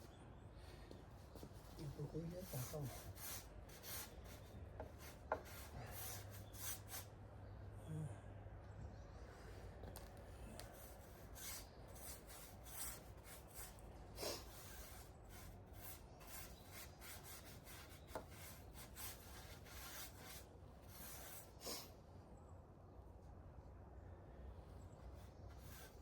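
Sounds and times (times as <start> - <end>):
hand scraping wooden boards: 2.5 - 7.0, 10.6 - 21.6.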